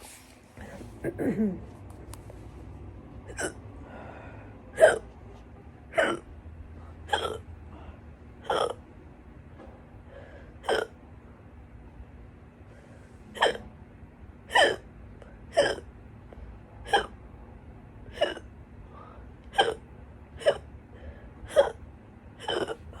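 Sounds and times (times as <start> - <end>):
person hiccuping loudly: 1.0 - 1.7, 3.3 - 3.6, 4.8 - 5.1, 5.9 - 6.3, 7.1 - 7.5, 8.4 - 8.8, 10.6 - 11.0, 13.4 - 13.7, 14.5 - 14.9, 15.5 - 15.9, 16.8 - 17.2, 18.1 - 18.5, 19.5 - 19.8, 20.4 - 20.7, 21.5 - 21.8, 22.4 - 23.0.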